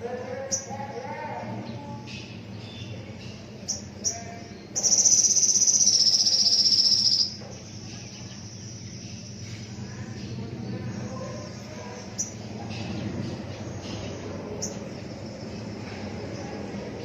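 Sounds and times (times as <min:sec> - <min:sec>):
insect high-pitched trill: 0:03.7 - 0:09.3
insect chirps: 0:03.7 - 0:10.0.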